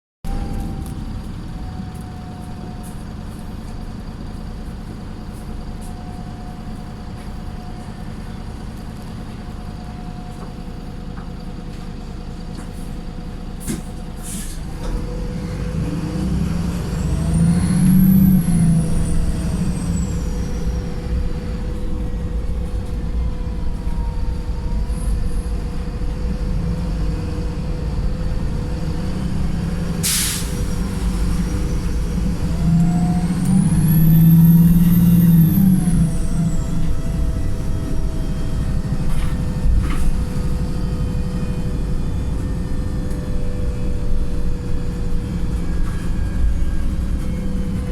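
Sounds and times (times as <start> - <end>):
bus diesel engine running: 0.2 - 47.9
high engine whine: 0.3 - 47.9
air brake hiss: 13.6 - 14.7, 30.0 - 31.0.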